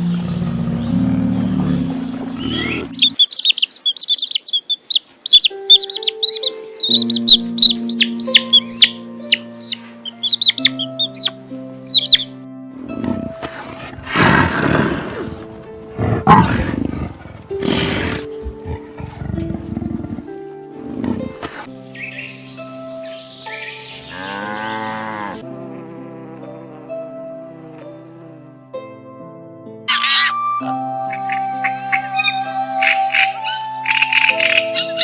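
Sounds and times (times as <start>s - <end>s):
background music: 0.0s - 3.2s, 5.2s - 35.0s
rasping animal calls: 0.0s - 21.7s, 29.9s - 30.5s, 31.2s - 35.0s
chicks peeping: 1.7s - 12.3s.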